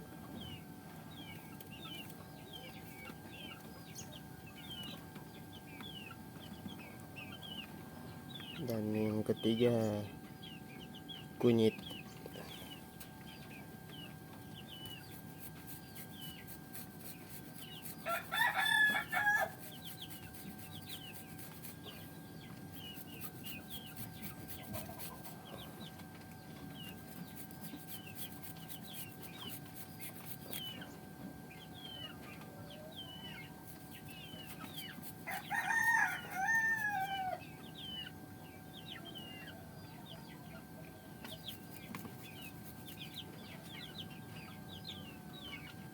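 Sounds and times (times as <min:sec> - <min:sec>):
faint steady hum: 0:00.0 - 0:45.9
rooster crowing: 0:18.0 - 0:19.9, 0:35.2 - 0:37.4.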